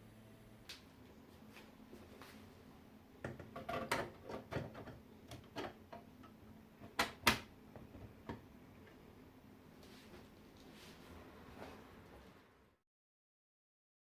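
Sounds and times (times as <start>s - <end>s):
hardware clicks and knocks: 3.2s - 8.5s.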